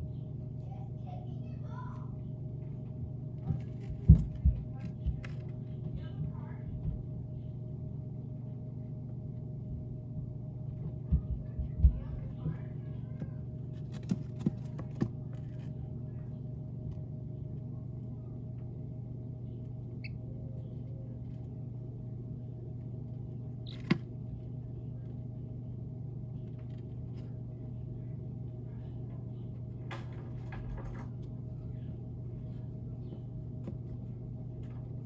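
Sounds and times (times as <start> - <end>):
low hum: 0.0 - 35.0
baby chick peep: 19.9 - 21.3, 23.6 - 24.0.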